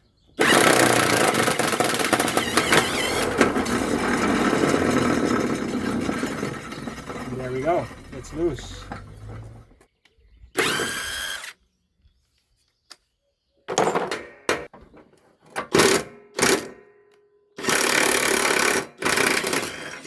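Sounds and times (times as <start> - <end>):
impact wrench bursts: 0.4 - 9.6, 10.6 - 11.5.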